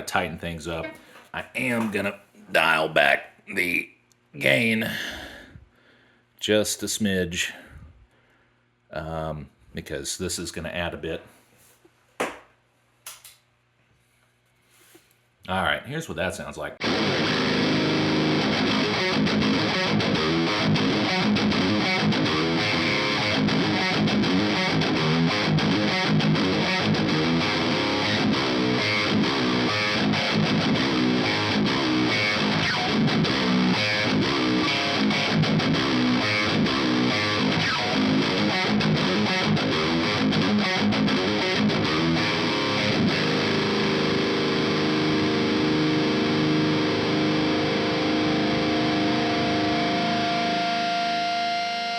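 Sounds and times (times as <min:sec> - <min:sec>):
distorted electric guitar riff: 0:16.8 - 0:51.9.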